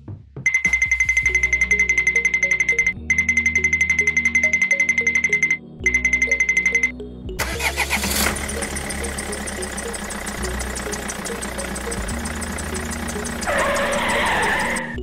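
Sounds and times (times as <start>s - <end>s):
small motor ticking chatter: 7.5s - 15.0s.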